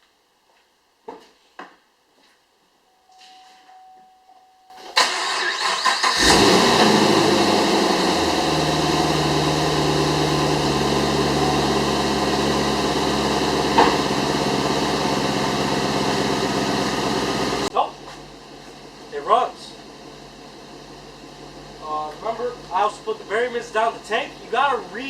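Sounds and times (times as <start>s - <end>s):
car engine starting and idling: 4.8s - 25.0s
starter motor cranking: 5.0s - 8.2s.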